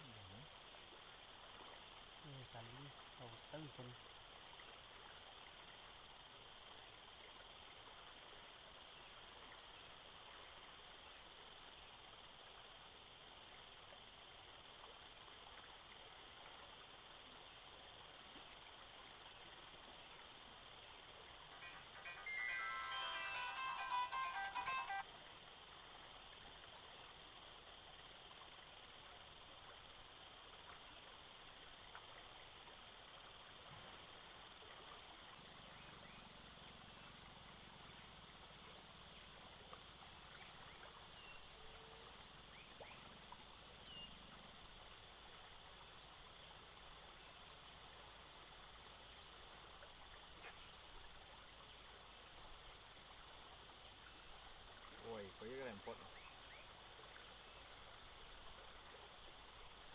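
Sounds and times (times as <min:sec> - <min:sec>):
crickets chirping: 0:00.0 - 0:59.9
faint ticks: 0:34.9 - 0:44.6, 0:49.5 - 0:50.8.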